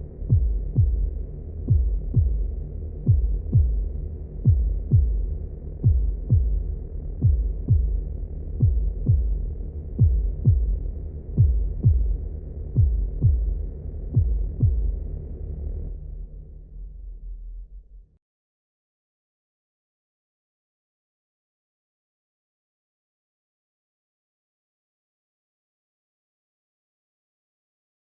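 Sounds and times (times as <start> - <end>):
heartbeat thumps: 0.2 - 15.0.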